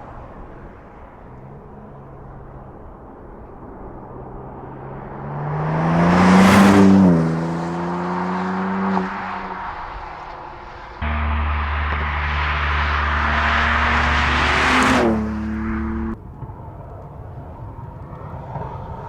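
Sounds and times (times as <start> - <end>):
car accelerating past: 4.2 - 16.2.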